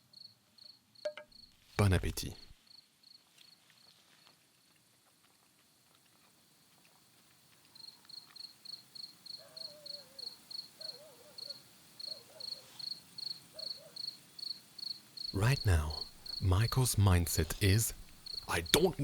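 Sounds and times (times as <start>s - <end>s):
cricket chirping: 7.8s - 19.0s.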